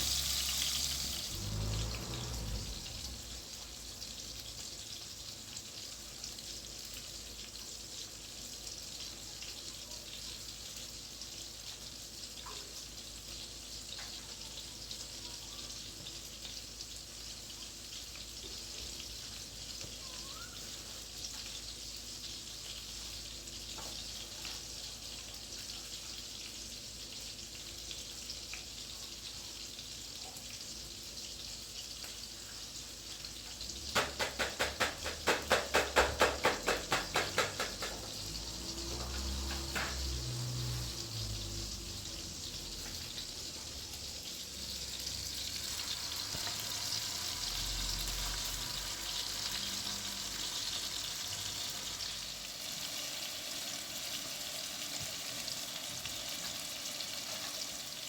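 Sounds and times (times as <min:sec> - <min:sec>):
meat sizzling and crackling: 0:00.0 - 0:58.0
fast run of loud knocks: 0:33.8 - 0:40.3.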